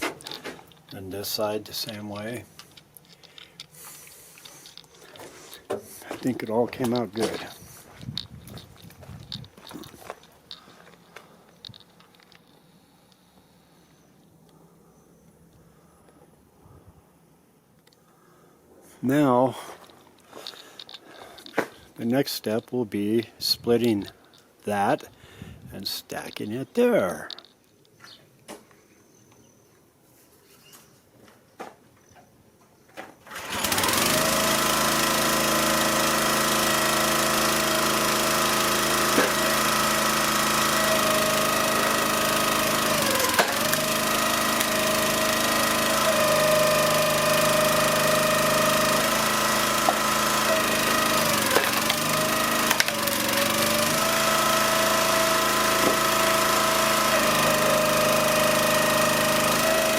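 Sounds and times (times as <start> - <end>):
small gasoline engine running: 33.3 - 59.9.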